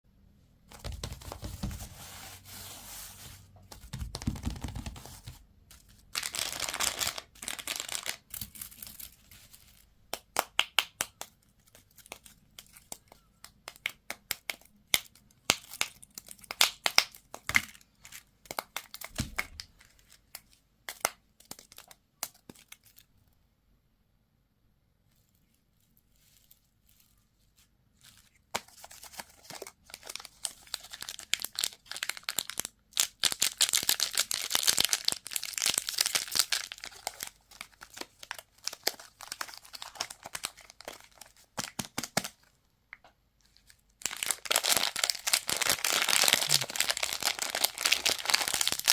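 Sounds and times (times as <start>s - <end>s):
packaging crinkling and tearing: 4.3s - 9.8s, 28.0s - 42.5s, 43.5s - 48.9s.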